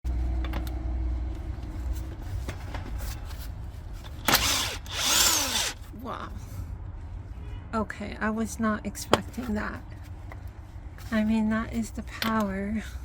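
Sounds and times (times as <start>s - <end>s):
low steady rumble: 0.1s - 13.0s
impact wrench hammering: 4.2s - 5.8s.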